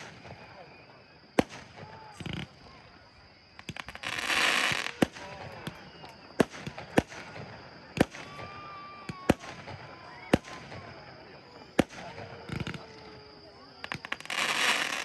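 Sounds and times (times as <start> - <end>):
fireworks hissing crackle: 0.0 - 15.0
fireworks shells bursting: 3.6 - 10.8, 13.8 - 15.0.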